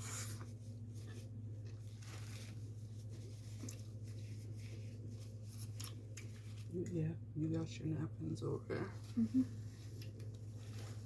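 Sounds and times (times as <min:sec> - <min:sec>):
chewing and crunching food: 0:00.0 - 0:06.8
steady low hum: 0:00.0 - 0:11.0.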